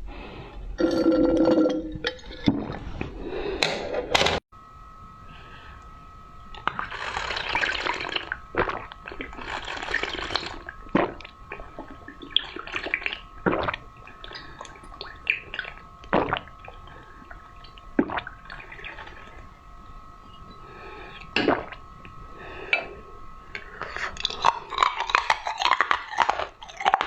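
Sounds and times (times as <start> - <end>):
liquid slurped and sipped: 6.6 - 19.5
sharp swallowing gulps: 6.6 - 19.5.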